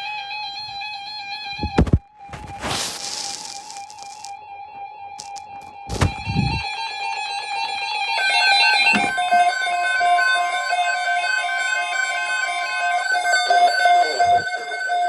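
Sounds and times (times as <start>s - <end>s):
low thump: 5.9s - 6.6s
two-pitch alarm tone: 7.4s - 15.0s.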